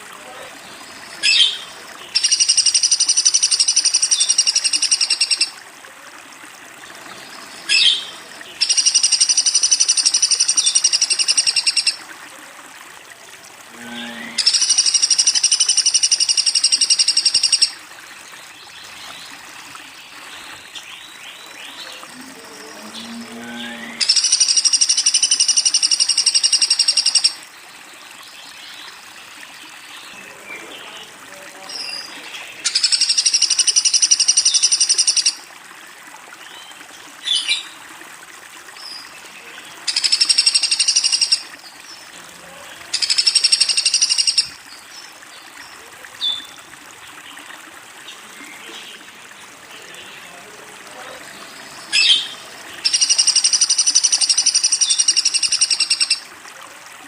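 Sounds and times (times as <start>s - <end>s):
woodpecker high-pitched trills: 1.2s - 5.5s, 8.6s - 12.0s, 14.4s - 17.8s, 24.0s - 27.4s, 32.6s - 35.4s, 39.9s - 41.4s, 42.9s - 44.6s, 51.9s - 56.2s.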